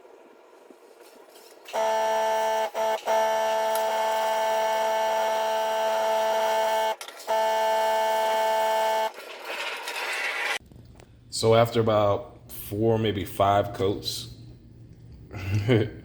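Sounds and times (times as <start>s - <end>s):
air compressor humming: 1.7s - 9.1s.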